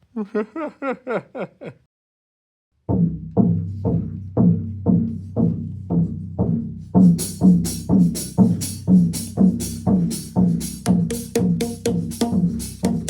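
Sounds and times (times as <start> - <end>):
clicking percussion: 7.1 - 13.0.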